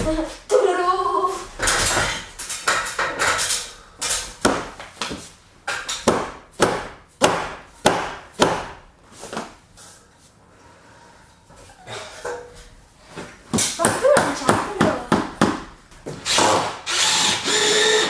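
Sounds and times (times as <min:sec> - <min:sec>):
tool striking wood: 0:05.7 - 0:08.8, 0:13.5 - 0:16.8.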